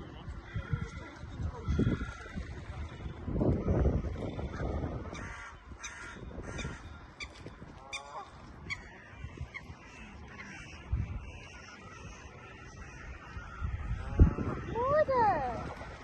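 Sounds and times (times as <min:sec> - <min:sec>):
waterfowl honking calls: 0:03.7 - 0:15.6.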